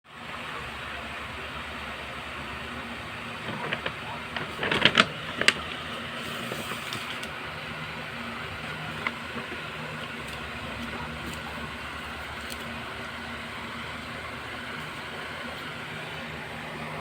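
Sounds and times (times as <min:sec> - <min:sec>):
plastic wrapping crinkling: 0:03.2 - 0:15.8.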